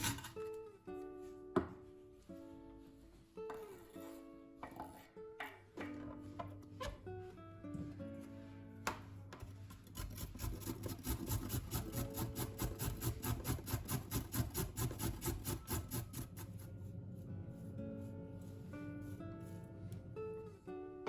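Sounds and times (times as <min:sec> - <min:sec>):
soft guitar music: 0:00.0 - 0:14.1, 0:15.4 - 0:21.0
rhythmic scraping strokes: 0:09.9 - 0:20.4.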